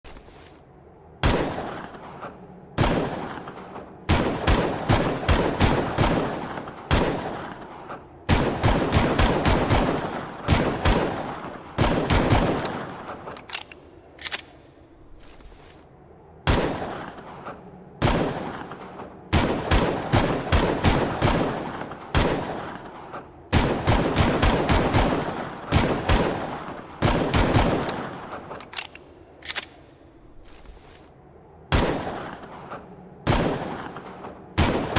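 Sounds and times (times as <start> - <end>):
pistol gunshots with echo: 1.2 - 13.4, 16.4 - 28.6, 31.7 - 34.9.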